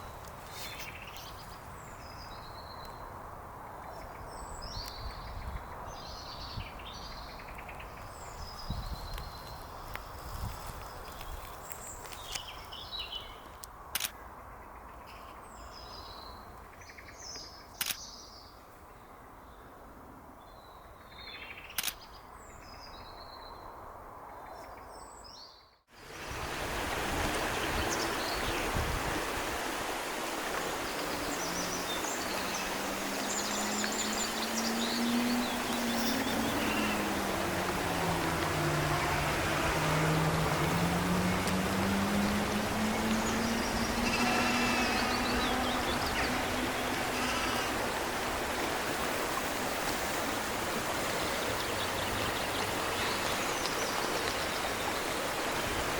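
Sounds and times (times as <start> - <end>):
birds gliding calls: 26.0 - 55.9
low hum: 30.7 - 49.9.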